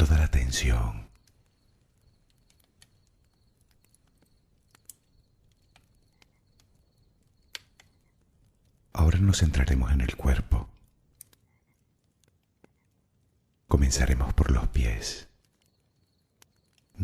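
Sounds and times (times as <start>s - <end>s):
soft clicks: 1.1s - 8.8s.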